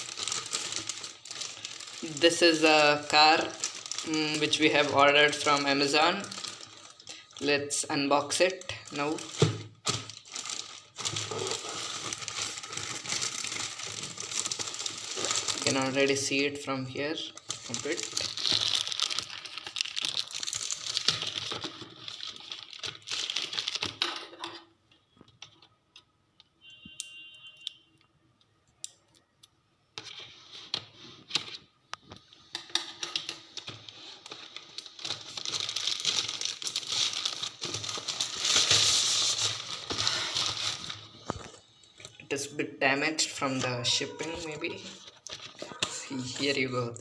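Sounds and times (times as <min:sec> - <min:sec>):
packaging crinkling and tearing: 0:00.0 - 0:16.3, 0:17.2 - 0:24.5, 0:33.0 - 0:42.2, 0:43.4 - 0:46.5.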